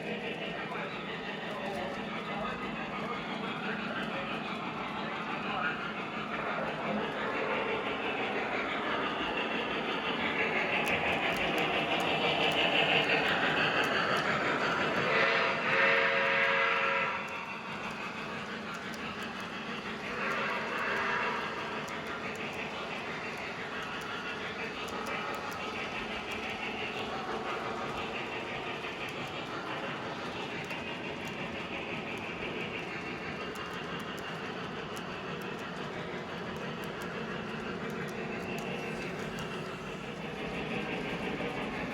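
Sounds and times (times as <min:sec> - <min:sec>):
model train rolling whir: 0:00.0 - 0:41.9
light clicks: 0:17.2 - 0:41.9.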